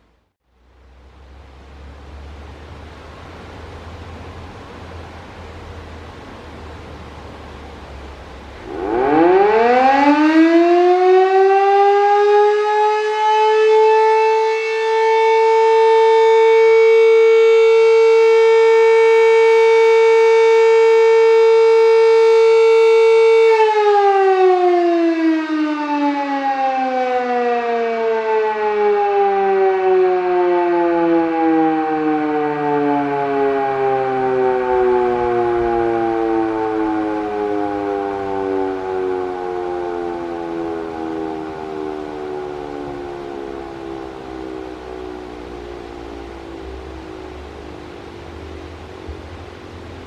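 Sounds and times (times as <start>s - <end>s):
electric motor siren winding up and down: 8.6s - 47.5s.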